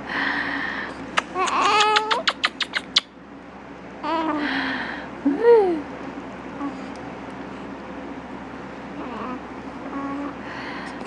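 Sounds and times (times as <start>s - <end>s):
baby cooing: 1.4s - 2.6s, 9.0s - 10.3s.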